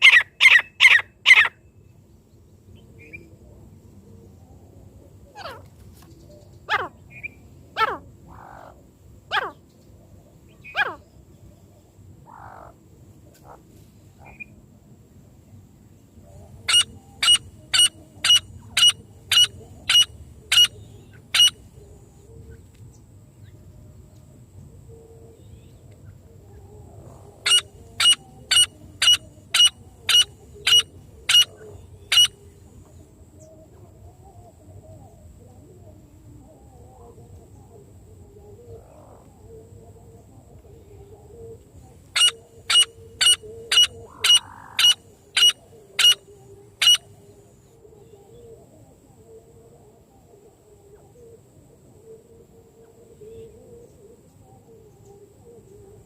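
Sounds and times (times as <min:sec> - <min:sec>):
francolin calling: 0:00.0 - 0:01.7, 0:16.3 - 0:22.6, 0:25.4 - 0:33.8, 0:40.9 - 0:48.5.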